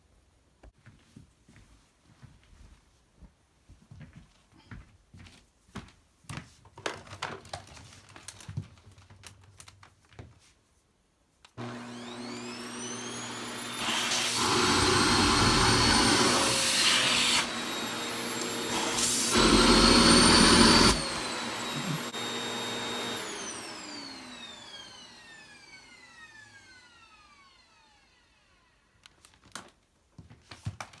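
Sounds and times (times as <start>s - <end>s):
vacuum cleaner running: 11.6s - 28.7s.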